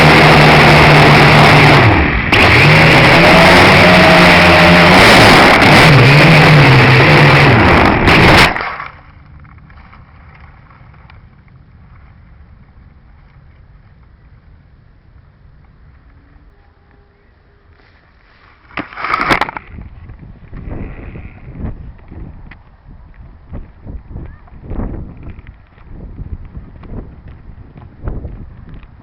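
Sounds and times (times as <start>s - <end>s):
quadcopter propellers buzzing: 0.0s - 8.6s
faint wind noise: 0.0s - 29.0s.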